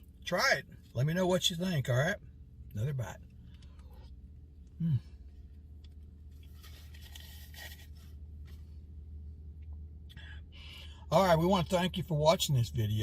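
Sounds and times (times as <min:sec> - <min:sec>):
steady low hum: 0:00.0 - 0:13.0
quiet eating sounds: 0:03.2 - 0:08.7.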